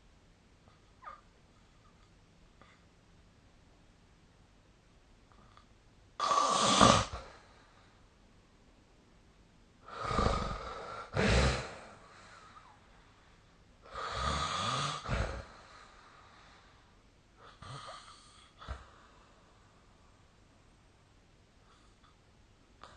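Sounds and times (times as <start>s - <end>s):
person snoring: 9.9s - 12.1s, 13.9s - 15.6s.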